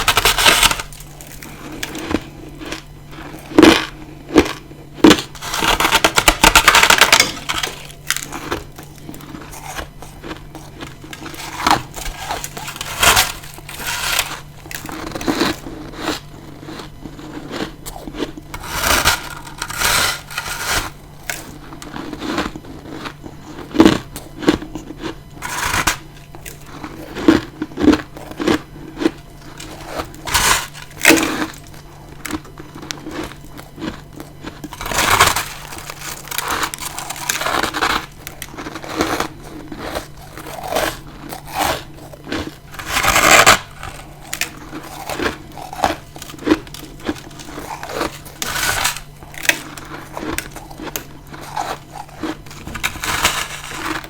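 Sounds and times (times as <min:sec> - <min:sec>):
biting crunchy frost: 0:00.0 - 0:54.0.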